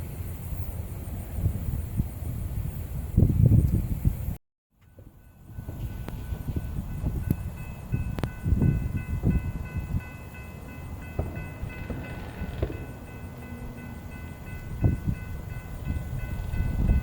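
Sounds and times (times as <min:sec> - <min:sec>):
wind buffeting microphone: 0:00.6 - 0:04.4, 0:05.0 - 0:17.0
train passing: 0:04.8 - 0:17.0.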